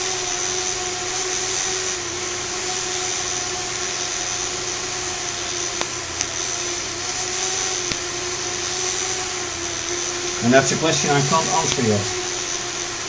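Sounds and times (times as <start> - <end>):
small electric motors whirring: 0.0 - 13.0.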